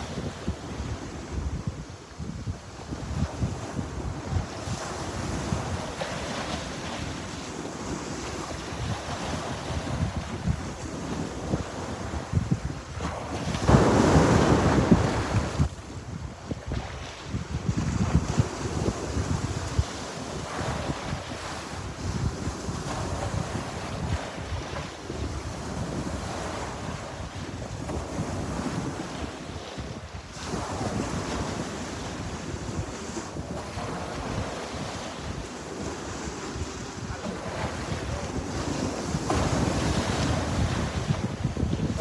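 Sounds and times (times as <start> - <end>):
sea surf washing: 0.0 - 42.0
wind buffeting microphone: 0.0 - 42.0.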